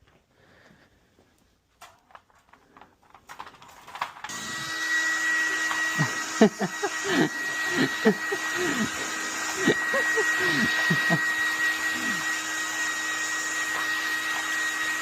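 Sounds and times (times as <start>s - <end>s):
blow dryer whining: 4.3s - 15.0s.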